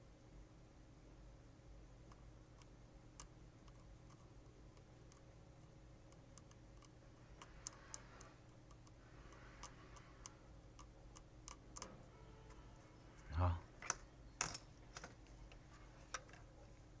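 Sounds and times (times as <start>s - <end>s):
small tools clicking on circuit board: 2.1s - 12.0s.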